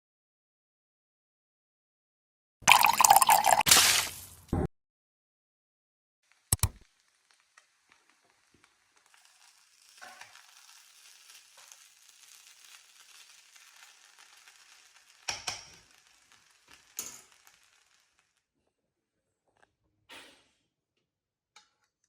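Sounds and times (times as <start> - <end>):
food sizzling in hot oil: 2.7 - 4.5, 6.3 - 18.4.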